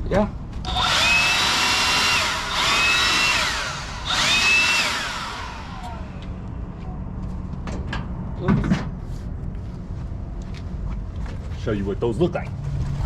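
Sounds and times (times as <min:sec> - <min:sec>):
electric drill drilling concrete: 0:00.7 - 0:06.3.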